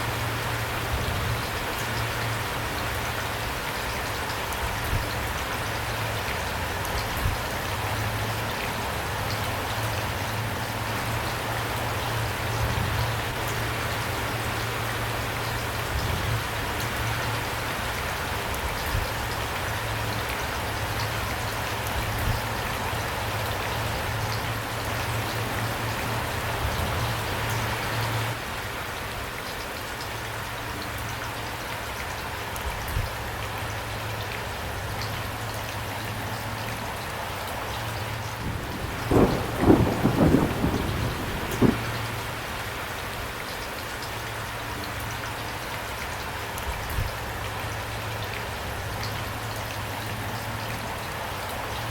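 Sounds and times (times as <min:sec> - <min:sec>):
crackling thunder: 0:38.4 - 0:42.3
heavy rain falling: 0:38.4 - 0:42.4.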